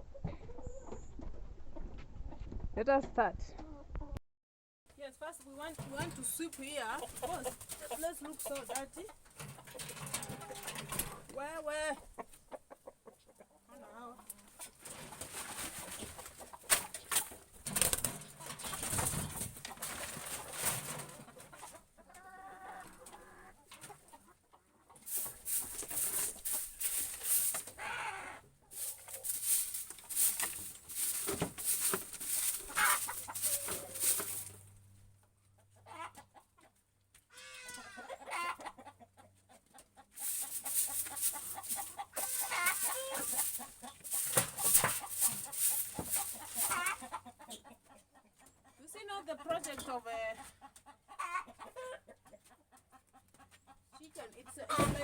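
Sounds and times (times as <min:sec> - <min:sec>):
chickens clucking: 0:00.0 - 0:02.6, 0:05.3 - 0:55.0
broom sweeping floor: 0:25.1 - 0:28.0, 0:28.7 - 0:34.6, 0:40.2 - 0:47.2.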